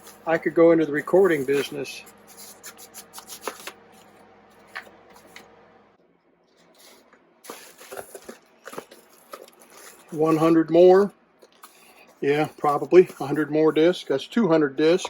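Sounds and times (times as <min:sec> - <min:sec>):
plastic discs clicking and rustling: 0:00.0 - 0:05.5, 0:07.0 - 0:10.4.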